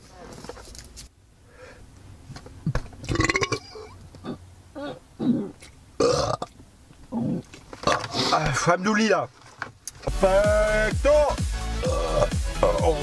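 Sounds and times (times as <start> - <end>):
man belching: 3.1 - 8.4, 11.8 - 13.0.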